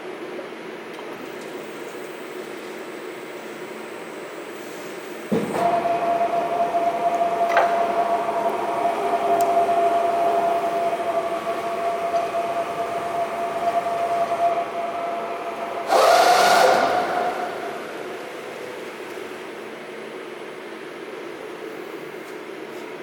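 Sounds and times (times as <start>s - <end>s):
press brake whining: 5.4s - 18.8s.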